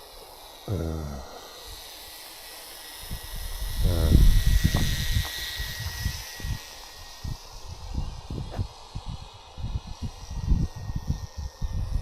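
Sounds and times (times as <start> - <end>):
small electric motor whine: 0.0 - 12.0
wind buffeting microphone: 3.0 - 12.0.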